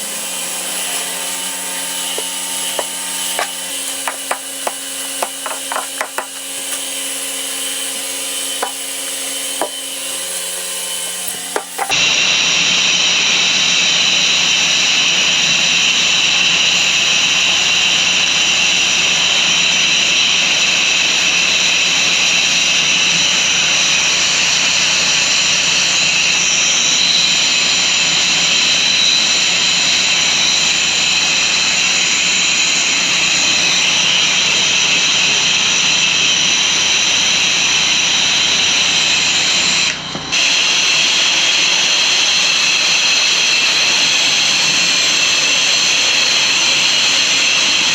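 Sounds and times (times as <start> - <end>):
pressure washer spraying: 0.0 - 12.0.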